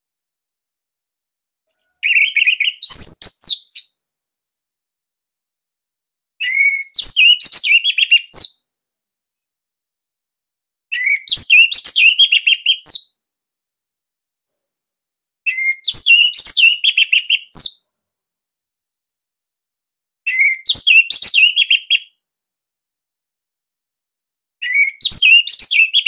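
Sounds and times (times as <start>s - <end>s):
thrush singing whistled phrases: 1.7s - 4.0s, 6.4s - 8.6s, 10.9s - 13.1s, 15.5s - 17.8s, 20.3s - 22.1s, 24.6s - 26.0s.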